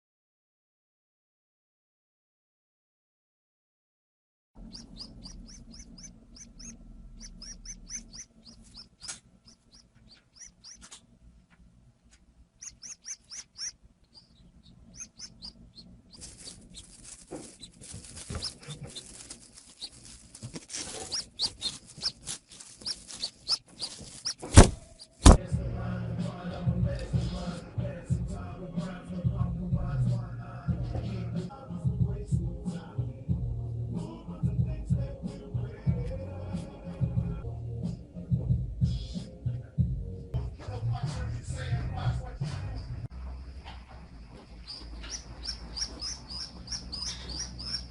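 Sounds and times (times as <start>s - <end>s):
baby pigeon peeping: 4.6s - 11.2s, 12.5s - 25.5s, 38.3s - 39.6s, 43.6s - 47.9s
rustling: 4.6s - 25.4s, 43.2s - 47.9s.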